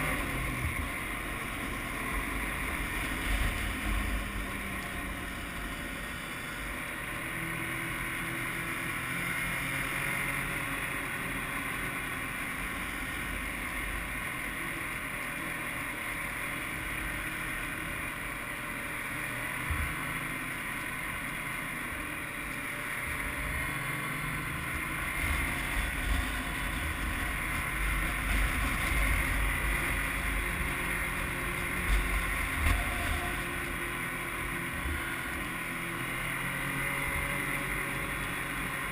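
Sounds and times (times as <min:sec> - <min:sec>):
snowmobile engine running: 0:00.0 - 0:38.9
wind rumbling on microphone: 0:24.8 - 0:33.9.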